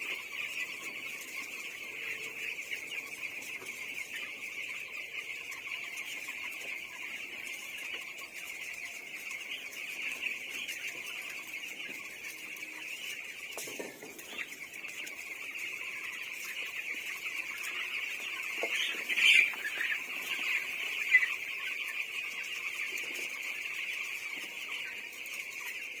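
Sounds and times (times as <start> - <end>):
chickens calling in chorus: 0.0 - 26.0
loud chicken calls: 0.0 - 26.0.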